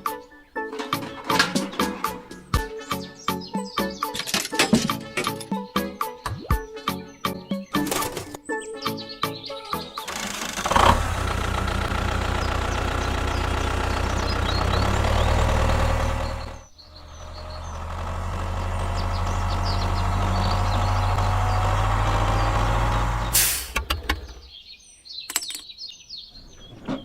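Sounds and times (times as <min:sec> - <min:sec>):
birds chirping: 0:00.0 - 0:27.0
small tractor engine running: 0:10.0 - 0:24.5.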